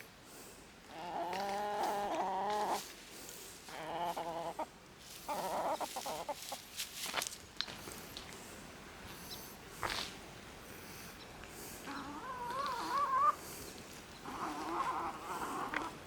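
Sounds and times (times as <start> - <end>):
chicken clucking: 0.9 - 2.9, 3.7 - 6.6, 11.9 - 13.4, 14.2 - 16.0.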